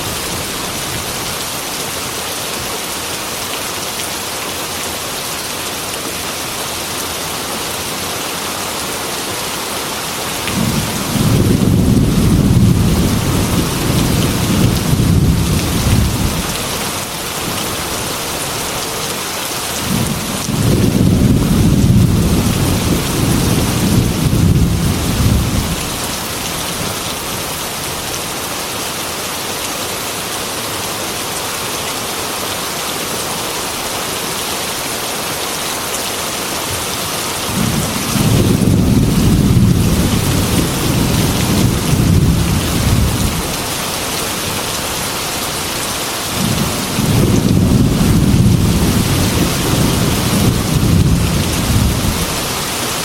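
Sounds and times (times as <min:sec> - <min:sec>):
heavy rain hissing: 0:00.0 - 0:53.0
rolling thunder: 0:10.5 - 0:16.4, 0:19.8 - 0:26.0, 0:37.5 - 0:43.4, 0:46.4 - 0:52.4.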